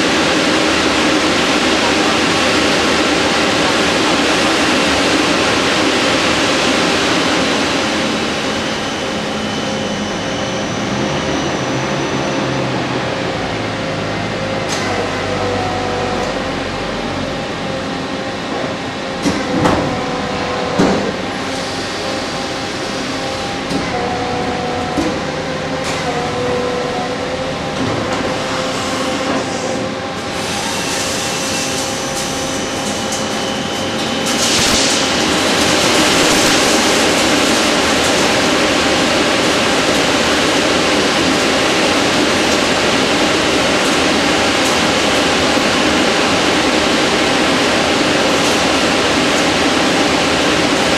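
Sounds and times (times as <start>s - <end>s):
lathe machine cutting hiss: 21.0s - 26.1s, 27.6s - 50.9s.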